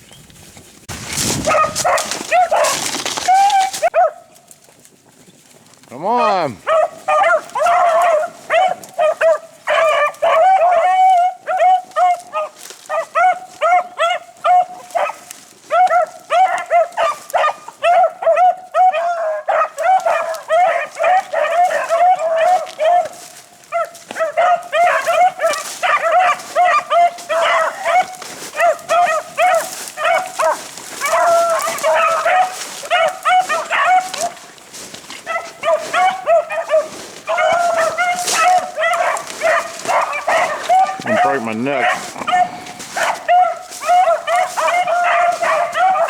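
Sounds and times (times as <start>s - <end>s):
dogs baying: 1.3s - 4.4s, 5.9s - 46.0s.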